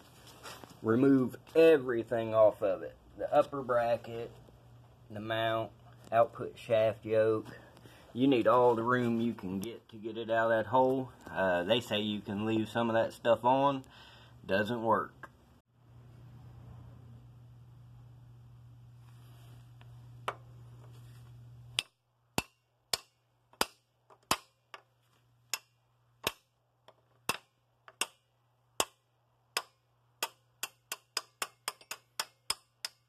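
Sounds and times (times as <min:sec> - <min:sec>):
faint steady hum: 0:00.0 - 0:33.0
sharp metallic taps: 0:28.8 - 0:33.0.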